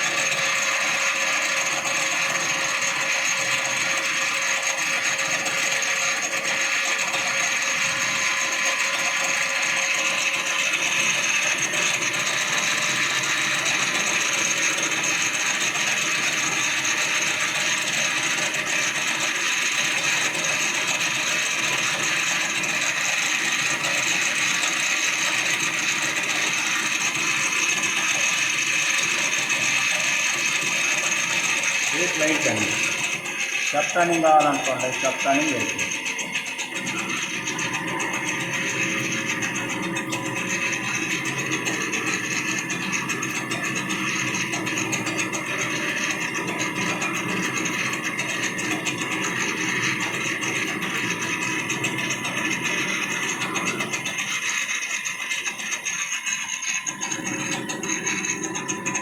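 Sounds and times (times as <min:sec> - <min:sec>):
lathe mechanical whir: 0:00.0 - 0:59.0
steady whining tones: 0:25.7 - 0:59.0.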